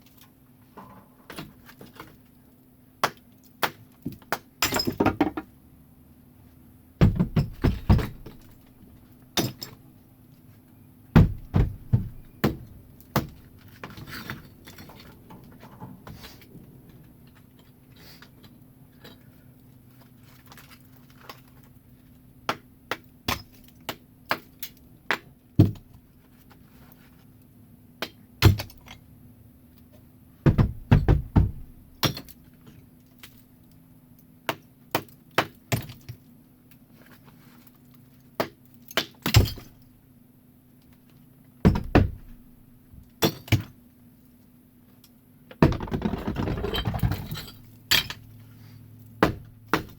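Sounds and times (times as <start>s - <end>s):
bricks knocking and clinking: 7.0s - 8.6s, 11.2s - 16.2s, 41.7s - 42.3s, 45.6s - 48.2s.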